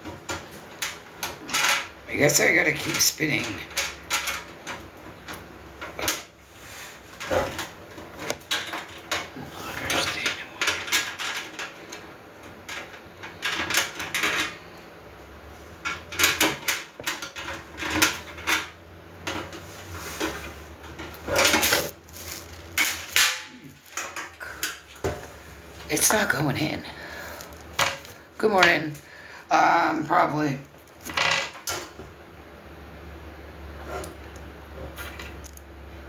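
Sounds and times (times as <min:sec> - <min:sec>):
metal grill parts clinking: 0:15.8 - 0:25.1.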